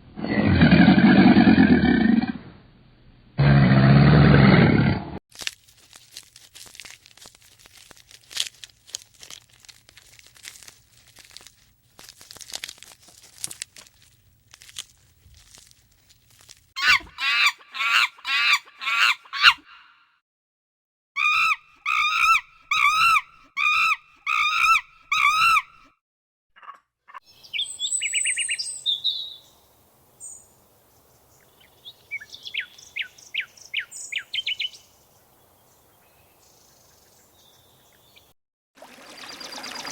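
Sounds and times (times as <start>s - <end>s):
loud pitched animal calls: 16.8s - 20.0s, 21.2s - 25.8s
bird trills and chirps: 26.6s - 29.6s, 30.2s - 38.3s.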